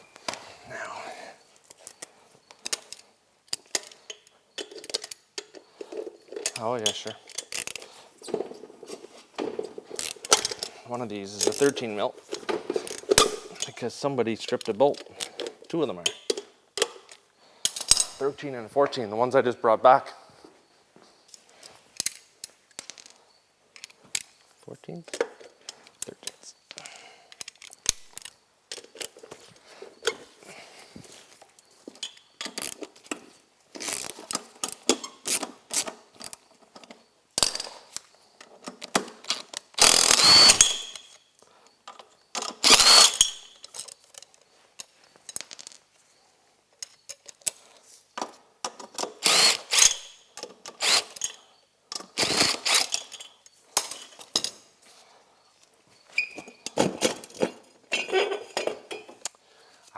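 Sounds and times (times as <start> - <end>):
metal tools clinking: 0.2 - 19.0, 21.3 - 46.0, 46.7 - 59.4
socket wrench ratchet clicks: 39.8 - 41.2, 42.4 - 43.7, 49.0 - 51.4, 52.0 - 53.3.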